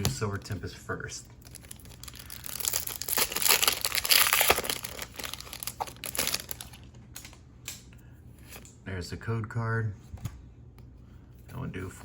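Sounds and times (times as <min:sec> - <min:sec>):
foil wrapper crinkling and tearing: 0:01.4 - 0:07.0.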